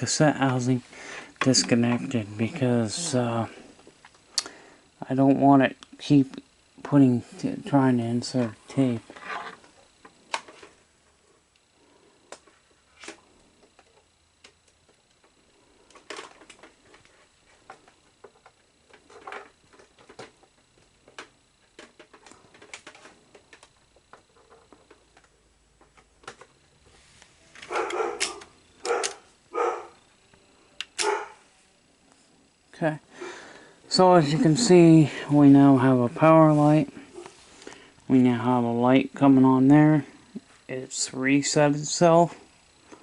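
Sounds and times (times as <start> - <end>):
dog barking: 27.7 - 30.0, 31.0 - 31.4.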